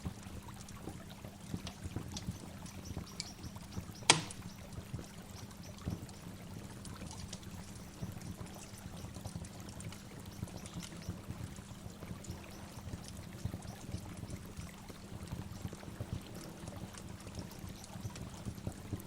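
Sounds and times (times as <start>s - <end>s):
sharp click: 4.1s - 4.4s.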